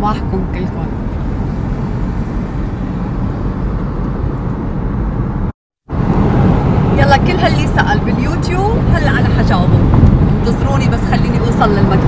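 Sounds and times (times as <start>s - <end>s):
car cabin road rumble: 0.0s - 12.0s.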